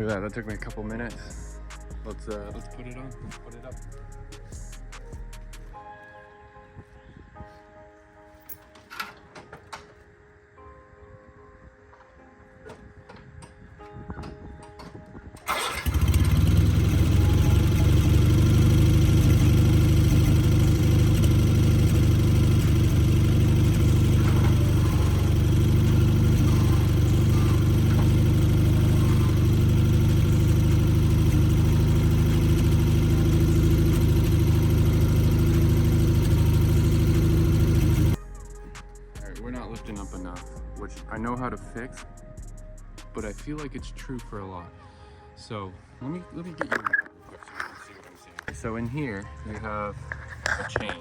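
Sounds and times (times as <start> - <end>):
garden tractor engine running: 15.4 - 38.2.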